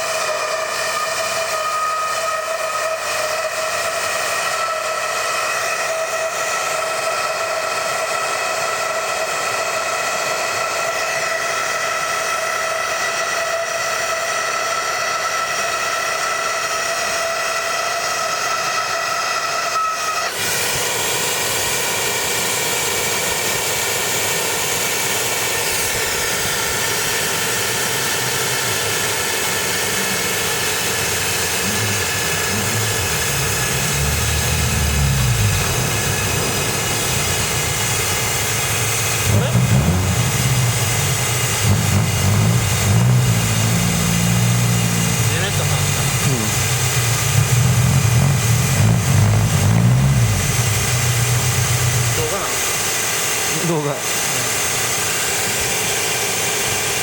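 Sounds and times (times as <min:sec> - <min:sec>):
rushing hiss of flame: 0:29.3 - 0:43.4.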